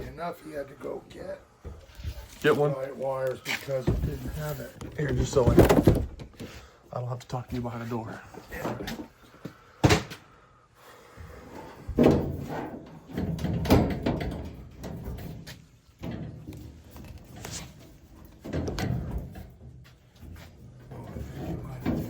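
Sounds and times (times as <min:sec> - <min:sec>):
door bumps and rattles: 0:03.8 - 0:06.5, 0:11.9 - 0:16.5.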